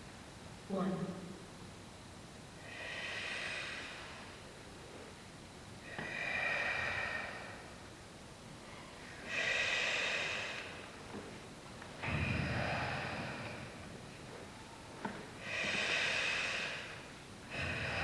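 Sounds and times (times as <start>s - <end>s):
people breathing in unison: 5.9s - 7.8s, 9.2s - 11.3s, 12.0s - 14.0s, 15.4s - 18.0s.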